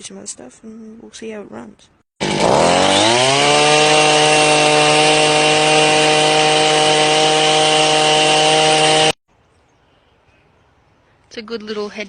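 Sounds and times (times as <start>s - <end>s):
two-stroke engine at full throttle: 2.2s - 9.2s.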